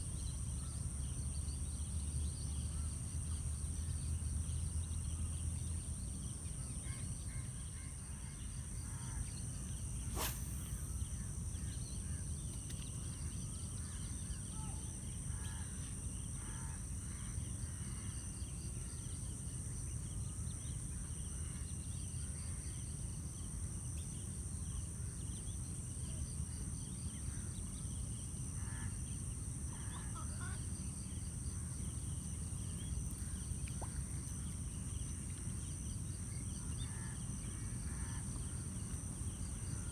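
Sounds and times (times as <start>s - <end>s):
high insect drone: 9.5s - 11.5s.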